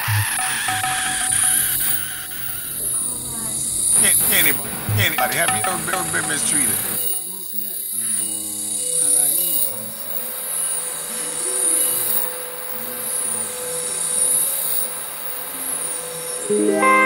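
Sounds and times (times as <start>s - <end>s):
electronic drone: 0.0s - 7.3s.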